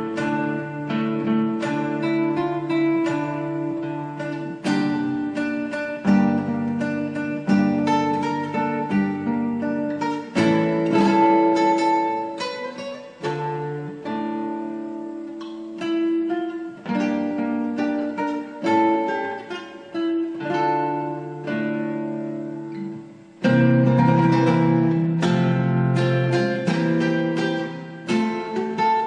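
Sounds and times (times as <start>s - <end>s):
acoustic guitar strumming and picking: 0.0s - 29.0s.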